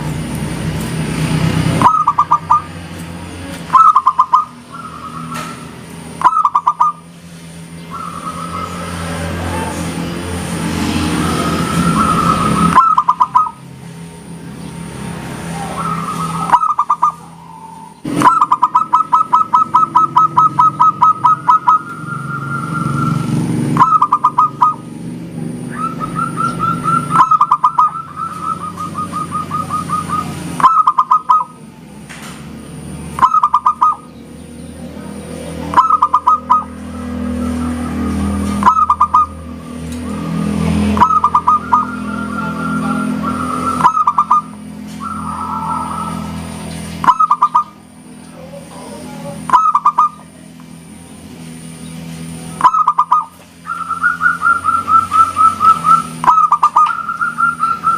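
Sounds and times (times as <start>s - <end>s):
dove cooing: 1.8s - 2.8s, 3.7s - 7.1s, 11.5s - 13.7s, 15.3s - 24.9s, 25.7s - 31.6s, 33.2s - 34.1s, 35.6s - 46.4s, 47.0s - 47.8s, 48.4s - 50.4s.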